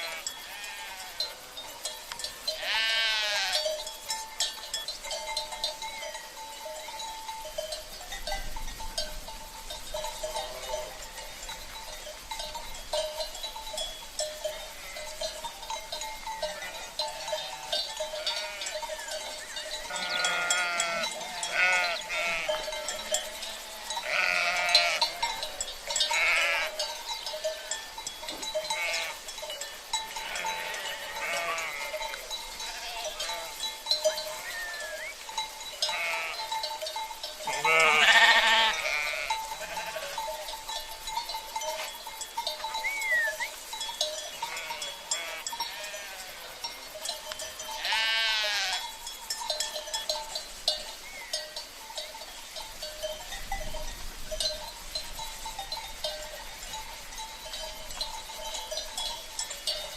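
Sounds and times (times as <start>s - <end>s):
sheep bleating: 0.0s - 1.4s, 2.6s - 3.7s, 16.5s - 18.8s, 19.8s - 22.9s, 23.5s - 25.4s, 26.1s - 26.8s, 28.7s - 29.2s, 30.2s - 33.6s, 34.2s - 35.1s, 35.8s - 36.5s, 37.5s - 40.3s, 44.4s - 46.6s, 47.8s - 48.8s
livestock bells clanking: 0.0s - 59.9s.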